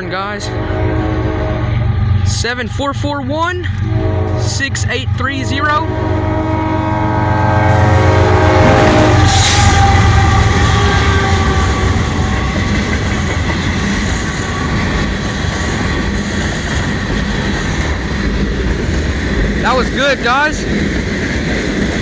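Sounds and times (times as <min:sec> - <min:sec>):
locomotive air horn: 0:00.0 - 0:02.3, 0:03.8 - 0:15.4
freight train rumbling past: 0:00.0 - 0:22.0.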